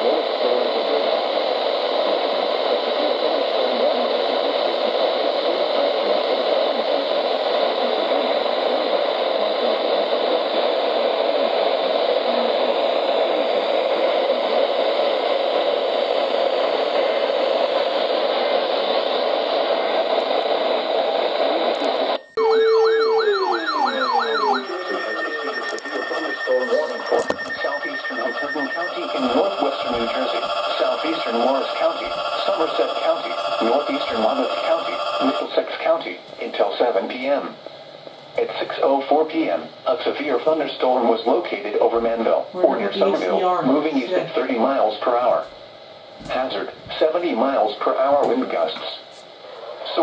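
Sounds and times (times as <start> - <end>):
radio static hiss: 0.0 - 45.6, 46.2 - 50.0.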